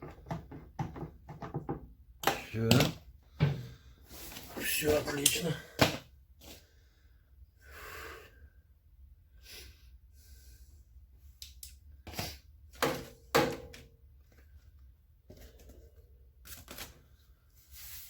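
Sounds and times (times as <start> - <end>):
sharp knocks and clicks: 0.0 - 2.9.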